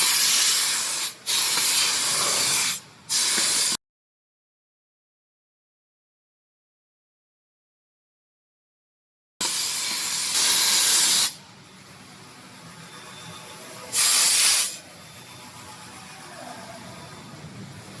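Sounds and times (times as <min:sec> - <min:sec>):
air gun hissing: 0:00.0 - 0:03.8, 0:09.4 - 0:11.4, 0:13.9 - 0:14.8.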